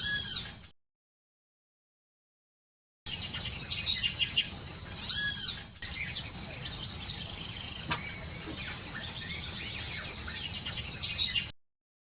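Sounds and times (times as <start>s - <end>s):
parrots chirping: 3.1s - 11.5s.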